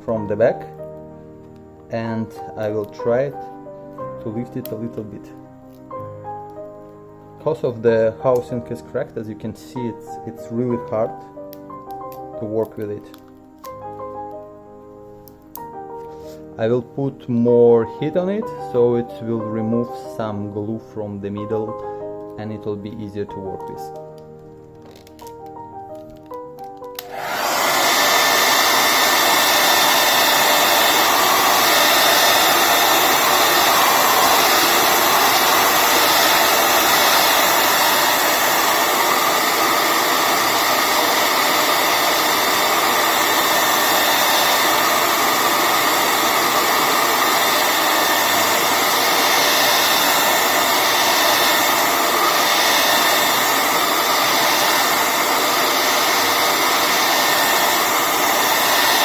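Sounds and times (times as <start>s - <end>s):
hair dryer blowing: 27.0s - 59.0s.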